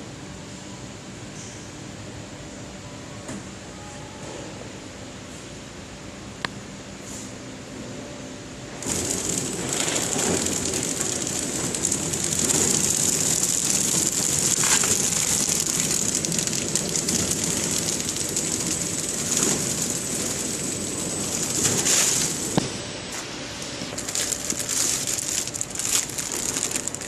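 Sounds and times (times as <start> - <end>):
machine high hiss: 8.7 - 27.0
packing machine clattering: 8.8 - 22.7, 23.9 - 27.0.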